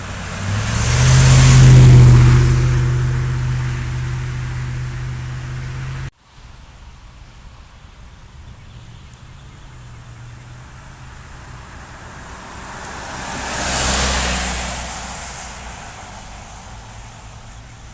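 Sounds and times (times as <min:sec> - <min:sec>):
engine idling: 0:00.0 - 0:06.1
vehicle passing by: 0:00.0 - 0:06.1, 0:09.0 - 0:17.9
outdoor road noise: 0:00.0 - 0:17.9.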